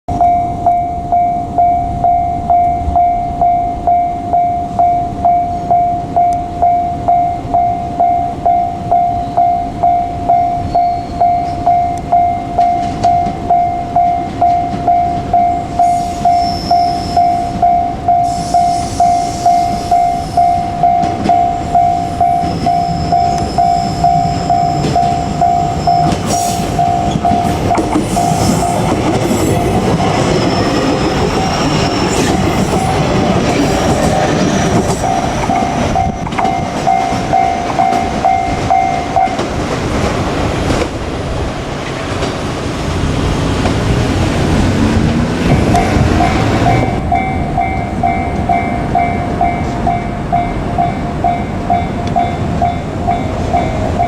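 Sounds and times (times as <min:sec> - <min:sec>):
level crossing bell ringing: 0:00.1 - 0:28.9, 0:35.0 - 0:39.4
train rumble: 0:00.1 - 0:54.0.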